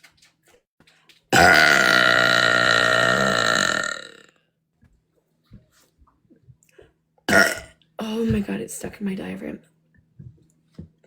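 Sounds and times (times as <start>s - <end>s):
woman burping: 1.4s - 4.3s, 7.3s - 7.8s.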